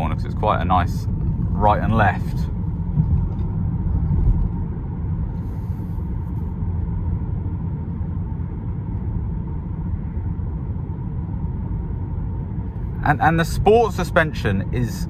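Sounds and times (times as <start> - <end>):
road and tyre rumble: 0.0 - 15.0.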